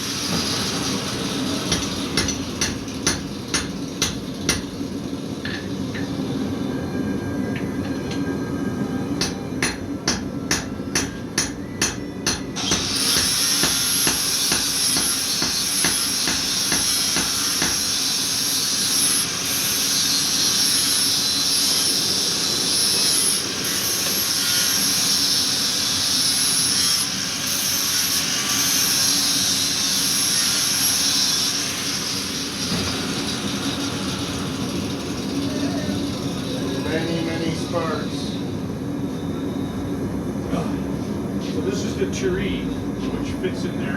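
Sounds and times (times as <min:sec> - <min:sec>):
hammer blows on metal: 0:09.2 - 0:18.2
angle grinder grinding steel: 0:12.6 - 0:38.1.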